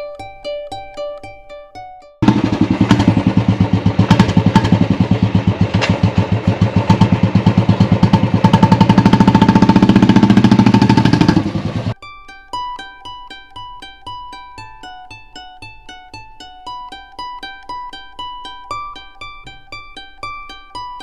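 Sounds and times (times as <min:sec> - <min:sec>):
music: 0:00.0 - 0:02.2, 0:11.9 - 0:21.0
small engine pulsing: 0:02.2 - 0:12.0.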